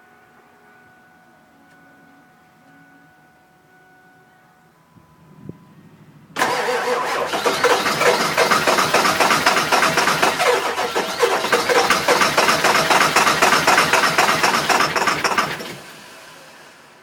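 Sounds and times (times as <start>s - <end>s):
diesel engine cranking: 6.4s - 17.0s.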